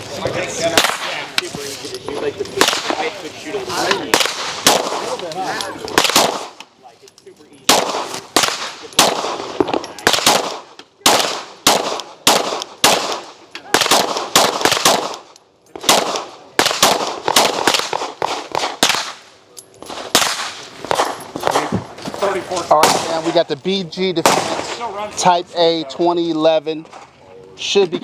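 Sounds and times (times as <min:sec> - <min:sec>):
gunshots with echo: 0:04.1 - 0:05.2, 0:06.0 - 0:06.6, 0:07.7 - 0:15.2, 0:15.8 - 0:19.2, 0:22.8 - 0:23.4, 0:24.2 - 0:24.8.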